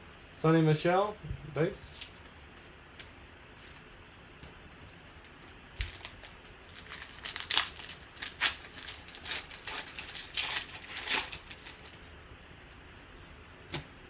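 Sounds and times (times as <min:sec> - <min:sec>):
cards and packaging rustling: 0:04.9 - 0:12.1.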